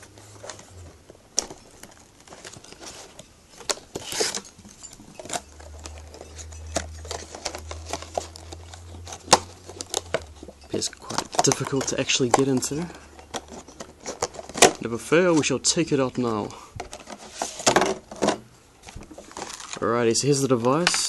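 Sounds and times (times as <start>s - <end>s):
packaging being opened by hand: 0.0s - 21.0s
rustling scrape: 1.8s - 16.3s, 16.9s - 18.2s.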